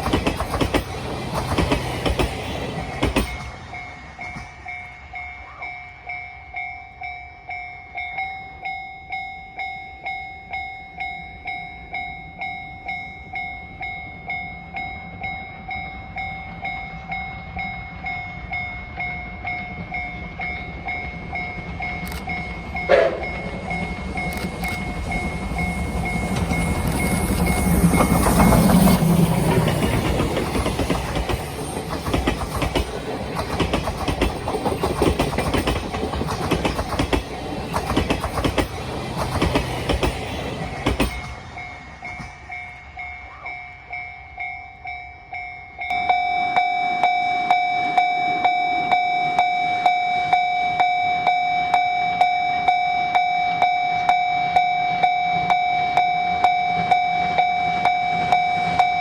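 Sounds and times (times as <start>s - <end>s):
wheels clattering over rail joints: 0.0s - 4.7s, 21.6s - 43.0s
level-crossing warning bell: 0.0s - 59.0s
steam train passing: 0.0s - 59.0s.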